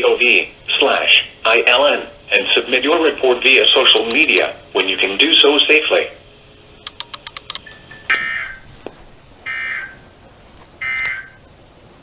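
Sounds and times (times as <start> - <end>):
quick clicks: 4.0 - 4.5, 6.8 - 7.7.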